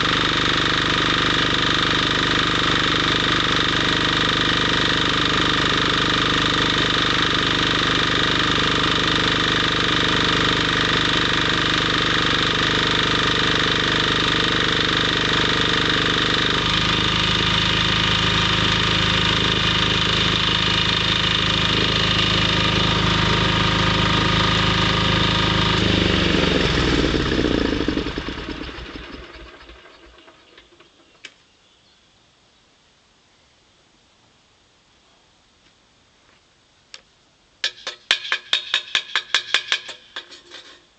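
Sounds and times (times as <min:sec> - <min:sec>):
engine winding down: 0:00.0 - 0:31.0
engine running: 0:00.0 - 0:31.1.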